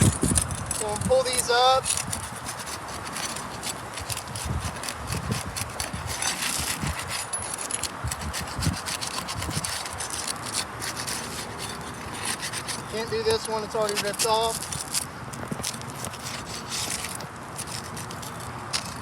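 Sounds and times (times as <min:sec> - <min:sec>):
shingles scraping and crackling: 0:00.0 - 0:19.0.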